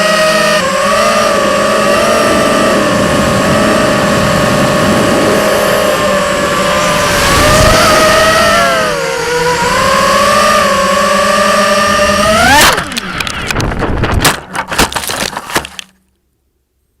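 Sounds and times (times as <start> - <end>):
drone motors whining: 0.0 - 16.0
sharp clicks and crackles: 12.5 - 16.0.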